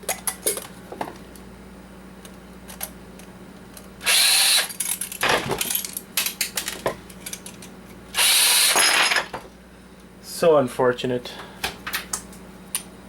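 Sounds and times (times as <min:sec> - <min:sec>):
power drill burst: 0:04.0 - 0:04.7, 0:08.2 - 0:09.3.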